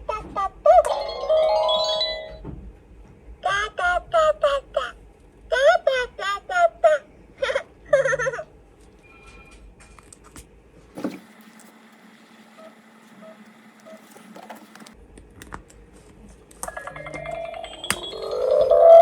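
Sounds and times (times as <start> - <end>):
chiming electronic tune: 16.8 - 19.0.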